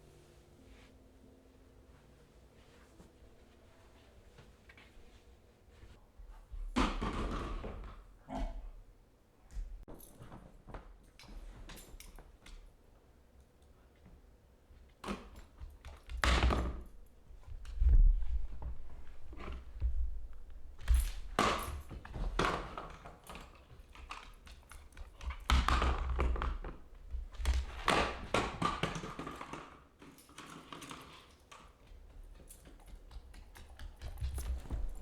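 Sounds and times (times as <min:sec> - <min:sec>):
objects knocking and thudding: 0:06.6 - 0:08.0.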